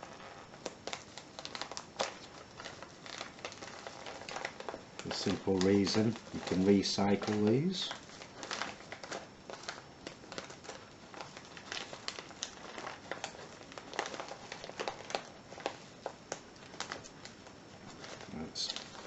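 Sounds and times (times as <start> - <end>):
packaging crinkling: 0.0 - 19.0.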